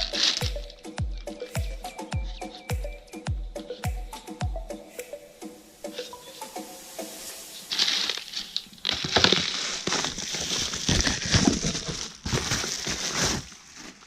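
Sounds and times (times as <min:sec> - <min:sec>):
packaging crinkling and rustling: 0:00.0 - 0:00.8, 0:07.6 - 0:14.0.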